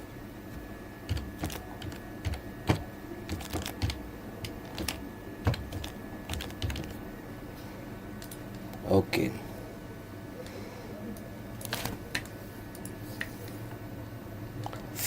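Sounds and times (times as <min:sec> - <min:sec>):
keyboard keystrokes: 0:01.1 - 0:07.0.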